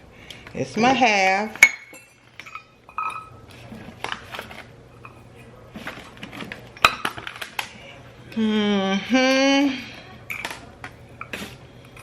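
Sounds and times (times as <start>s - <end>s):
utensils clinking against mixing bowl: 1.5s - 7.8s, 10.2s - 12.0s
person humming: 8.3s - 9.9s.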